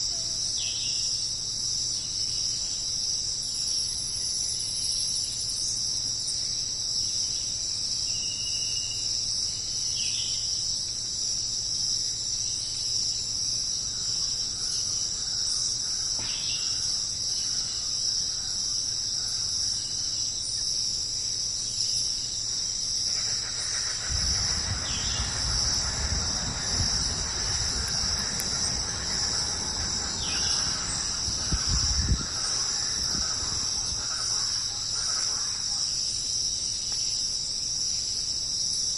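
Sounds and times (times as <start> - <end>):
insects chirping: 0.0 - 38.9
rushing noise: 23.1 - 35.6
low rumble: 23.2 - 34.9.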